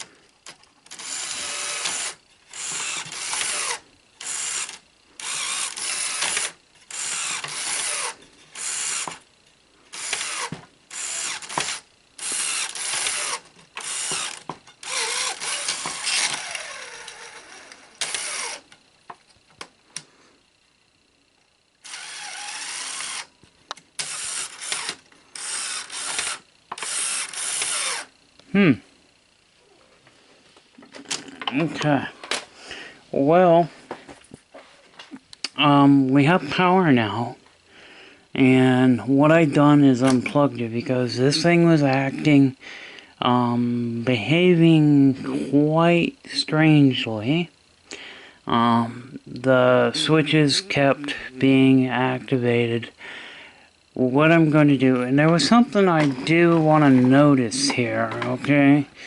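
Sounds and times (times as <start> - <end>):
motor and gears whirring: 0.0 - 29.2, 47.3 - 52.9, 53.7 - 59.0.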